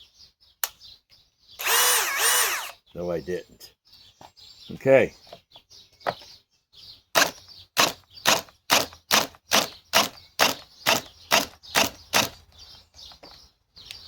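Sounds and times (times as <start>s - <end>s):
cordless hammer drill bursts: 1.6s - 2.8s, 7.2s - 12.4s.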